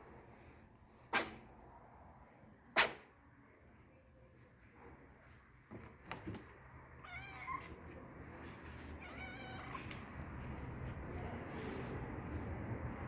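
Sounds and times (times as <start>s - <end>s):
cat meowing: 7.0s - 7.8s, 9.0s - 10.0s.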